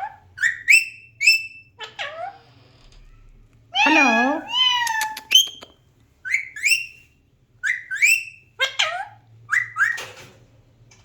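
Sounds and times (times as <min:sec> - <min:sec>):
parakeet whistled chirps: 0:00.4 - 0:01.7, 0:04.6 - 0:07.0, 0:07.6 - 0:08.5, 0:09.5 - 0:10.0.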